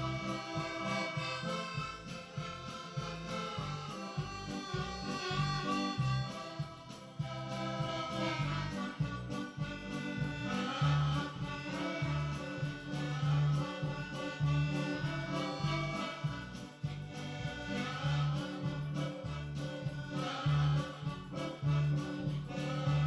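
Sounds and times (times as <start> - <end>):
background music with bass line: 0.0 - 23.0.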